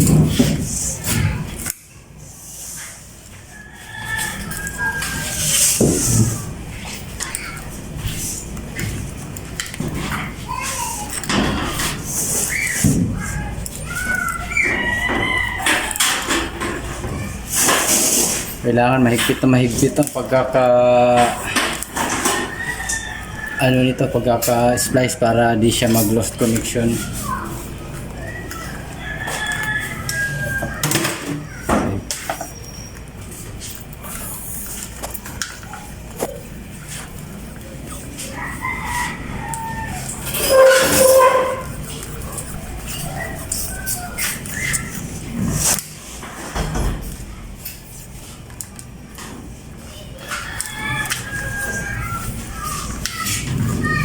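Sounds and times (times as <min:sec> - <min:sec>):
rooster crowing: 0:03.5 - 0:06.4, 0:14.5 - 0:16.4, 0:22.0 - 0:24.9, 0:28.2 - 0:30.9, 0:37.9 - 0:41.7, 0:50.2 - 0:54.0
knocks and rustles: 0:40.0 - 0:49.6.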